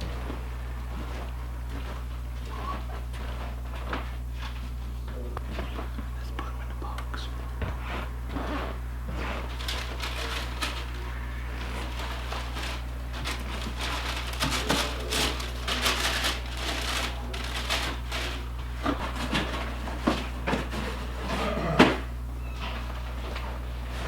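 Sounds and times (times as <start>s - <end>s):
shoes and cardboard box rustling: 7.8s - 22.1s.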